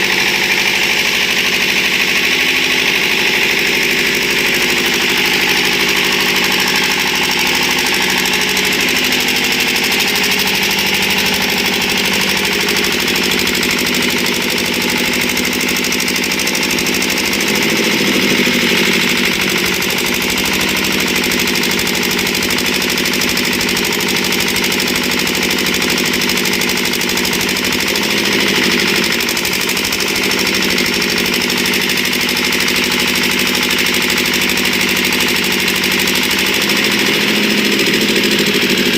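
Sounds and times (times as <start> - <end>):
diesel generator running: 0.0 - 38.9.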